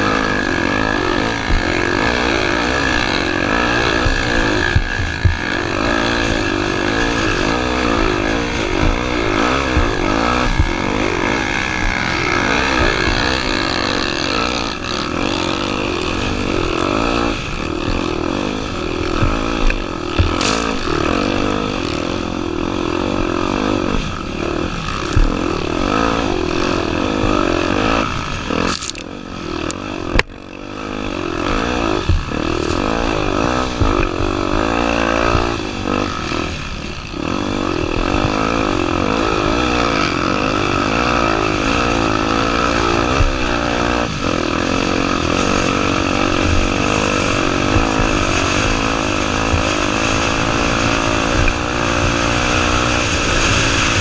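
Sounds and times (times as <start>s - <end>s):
sharp knocks: 0.0s - 18.1s, 19.0s - 21.2s, 25.0s - 26.1s
dirt bike engine revving: 0.0s - 54.0s.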